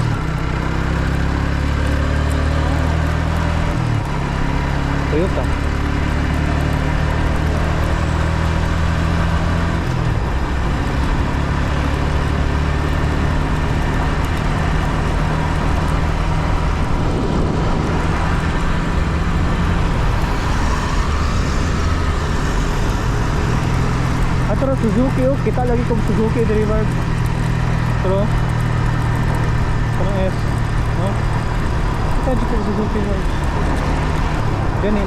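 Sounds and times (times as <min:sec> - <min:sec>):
motorcycle engine running: 0:00.0 - 0:35.0
rising tone: 0:14.2 - 0:25.5.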